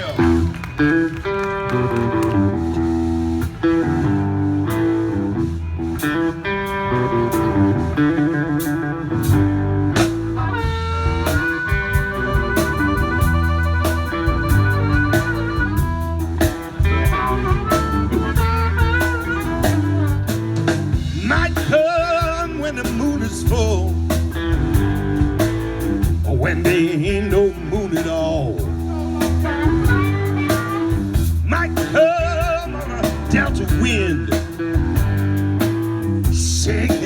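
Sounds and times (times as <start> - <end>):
bent electric guitar lead note: 0.0 - 26.5, 27.3 - 36.4
electric blues band playing: 0.0 - 37.0.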